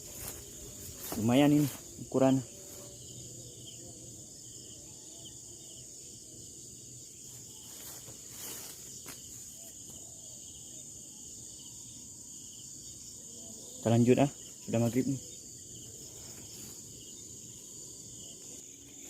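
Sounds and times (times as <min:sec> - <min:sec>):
insects chirping chorus: 0:00.0 - 0:19.0.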